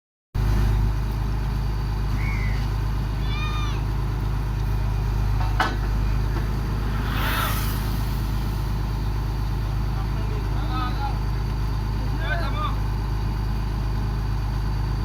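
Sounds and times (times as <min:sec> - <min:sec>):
drilling rig engine running: 0:00.4 - 0:15.0
brief hiss: 0:06.0 - 0:10.3.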